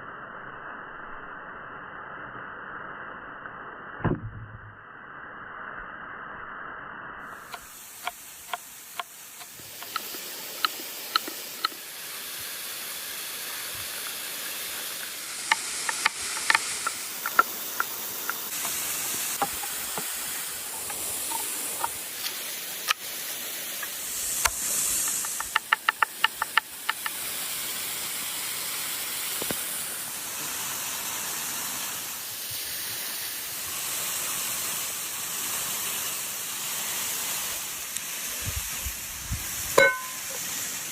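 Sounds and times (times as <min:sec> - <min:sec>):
food sizzling in hot fat: 0:07.2 - 0:40.9
fat crackling and popping: 0:07.5 - 0:11.8, 0:14.8 - 0:23.0, 0:23.8 - 0:27.2.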